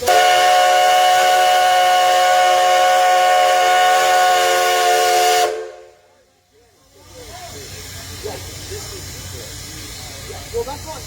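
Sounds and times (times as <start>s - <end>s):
steam whistle blast: 0.0s - 6.0s
hiss of escaping steam: 0.0s - 11.0s.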